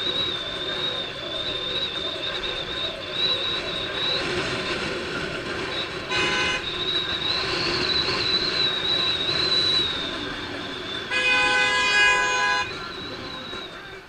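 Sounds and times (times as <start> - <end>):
street traffic: 0.0 - 14.0
horn honking: 6.0 - 6.8, 11.0 - 12.9.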